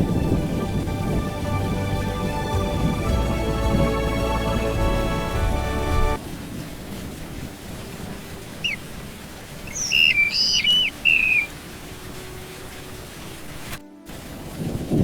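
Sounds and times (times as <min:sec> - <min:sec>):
small bird chirping: 0:09.7 - 0:11.5.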